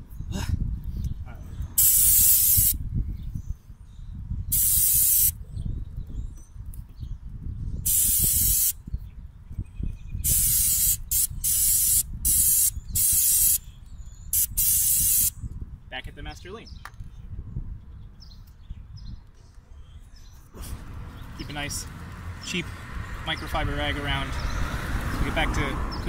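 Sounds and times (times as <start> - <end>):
wind rumble on microphone: 0.0 - 26.0
aerosol spray hissing bursts: 1.8 - 2.8, 4.5 - 5.4, 7.9 - 8.8, 10.2 - 13.6, 14.3 - 15.3.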